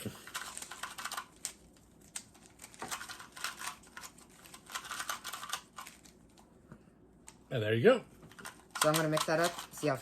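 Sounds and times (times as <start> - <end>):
puzzle cube plastic clicks: 0.1 - 6.4, 8.3 - 10.0.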